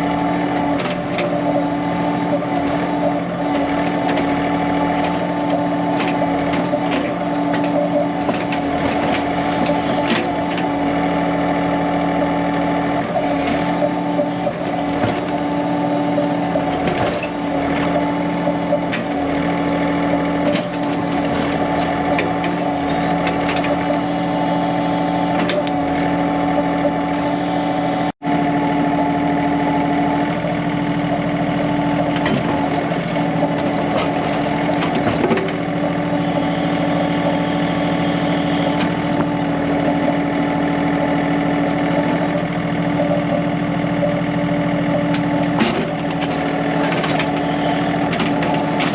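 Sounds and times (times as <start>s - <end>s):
tractor diesel engine running: 0.0s - 48.9s.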